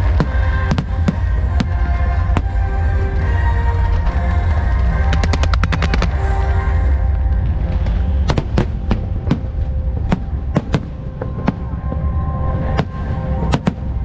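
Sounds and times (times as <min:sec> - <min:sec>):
fireworks banging: 0:00.0 - 0:02.6, 0:04.8 - 0:14.0
low rumble: 0:00.0 - 0:14.0.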